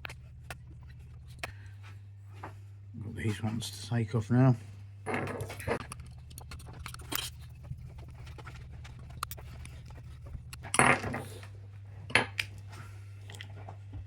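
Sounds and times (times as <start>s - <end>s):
steady low hum: 0.0s - 14.0s
small parts clicking and rattling: 5.1s - 11.5s.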